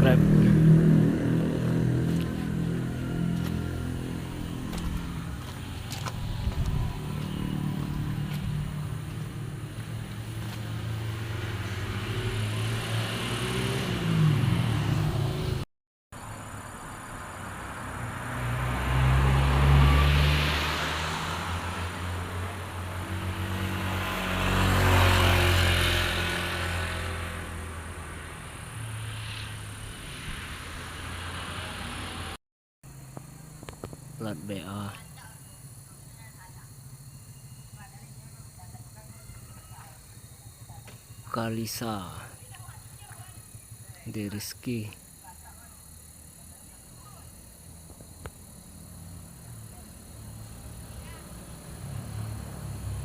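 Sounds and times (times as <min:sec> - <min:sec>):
diesel trucks driving past: 0:00.0 - 0:53.0.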